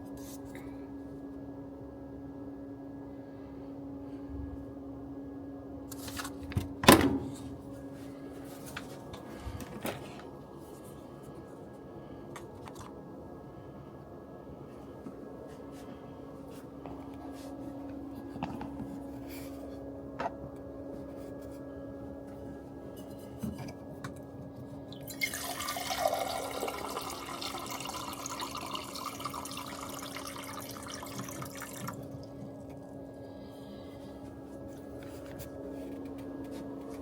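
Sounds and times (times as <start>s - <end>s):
steady low hum: 0.0s - 37.0s
water running: 25.0s - 32.3s.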